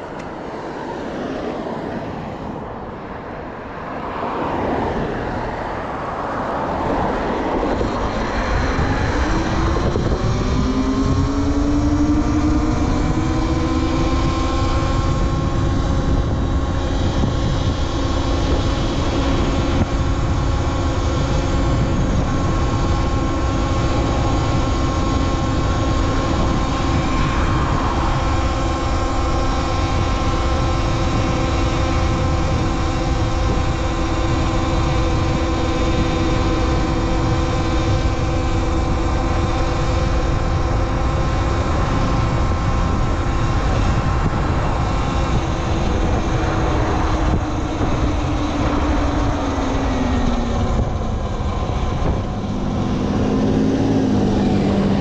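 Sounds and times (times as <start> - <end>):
constant low rush: 0.0 - 55.0
electric motor whining: 6.2 - 55.0.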